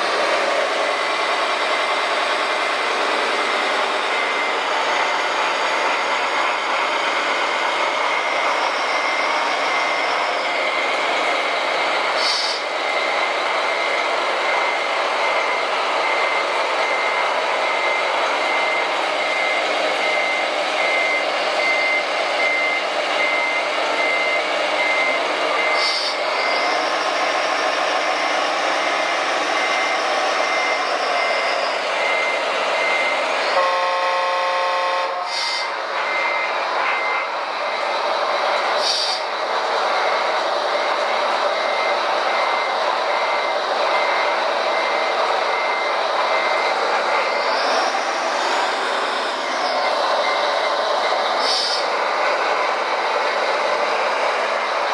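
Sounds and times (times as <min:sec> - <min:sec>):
reversing beeper: 0:00.0 - 0:54.9
horn blowing: 0:33.6 - 0:35.7
motor and gear noise: 0:42.9 - 0:54.9.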